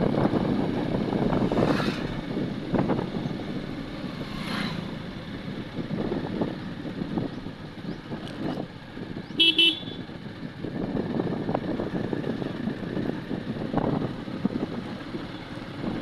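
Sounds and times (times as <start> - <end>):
road noise rumble: 0.0 - 16.0
vehicle horn toots: 9.4 - 10.1.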